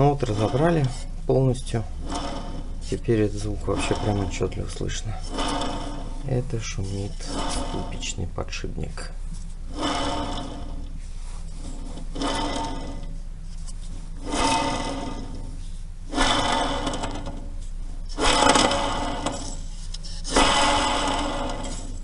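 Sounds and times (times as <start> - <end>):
worn wheel bearing rasping: 0.0 - 8.2, 9.7 - 10.9, 11.5 - 13.2.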